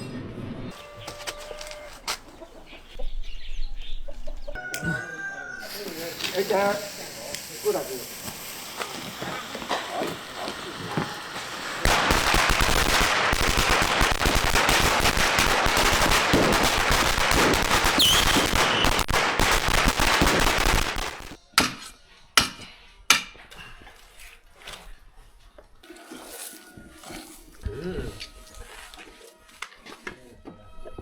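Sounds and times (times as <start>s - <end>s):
firecrackers crackling: 5.6s - 21.4s
loud bangs: 10.9s - 21.4s.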